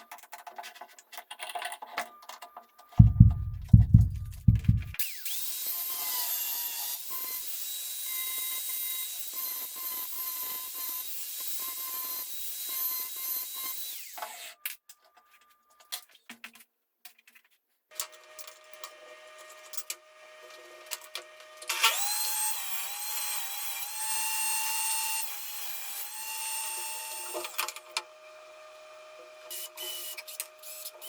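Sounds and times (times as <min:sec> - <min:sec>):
heavy knocks: 0:03.0 - 0:05.0
power tool cutting wood: 0:05.0 - 0:14.6, 0:18.2 - 0:31.0.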